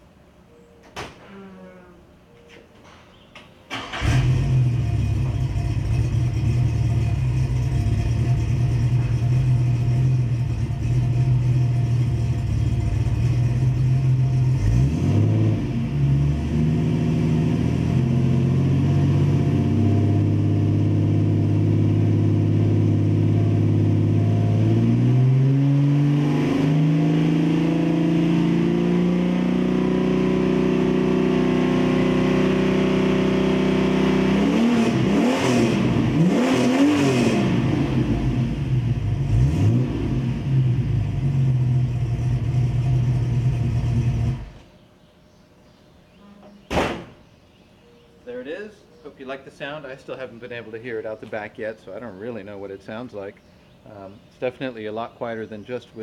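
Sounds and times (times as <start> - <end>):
car engine idling and revving: 3.8 - 44.8.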